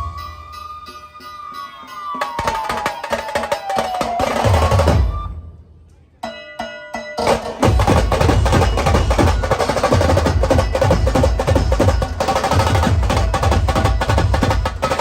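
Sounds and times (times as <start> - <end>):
deep dhol drum beats: 0.0 - 5.4, 7.0 - 15.0
rapid tasha drum strokes: 7.2 - 15.0.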